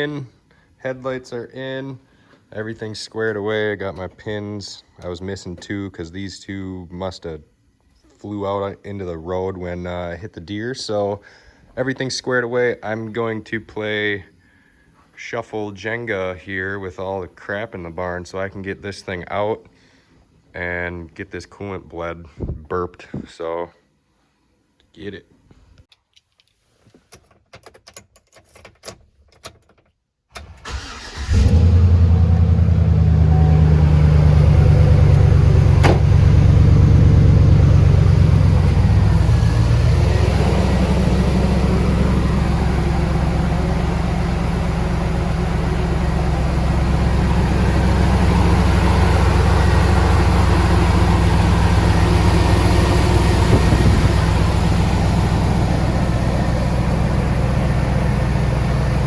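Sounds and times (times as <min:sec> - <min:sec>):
pickup engine starting and idling: 0:30.4 - 0:59.0.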